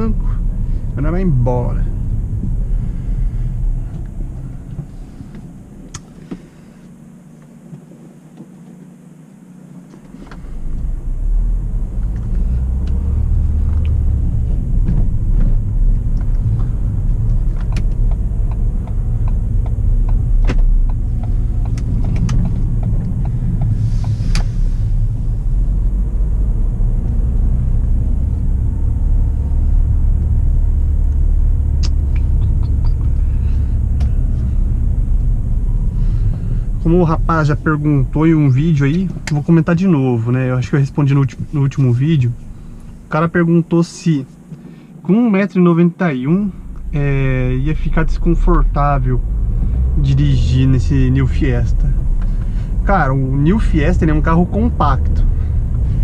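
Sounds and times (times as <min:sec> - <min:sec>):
car engine and road rumble: 0:00.0 - 0:56.0.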